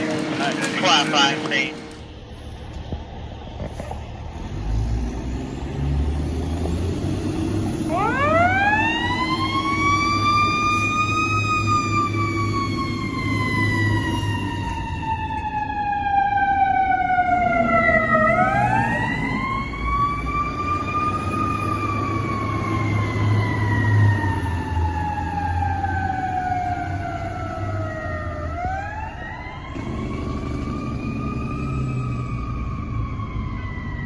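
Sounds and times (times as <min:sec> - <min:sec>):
truck engine running: 0:00.0 - 0:02.1
fire truck siren wailing: 0:00.0 - 0:02.2, 0:07.1 - 0:34.0.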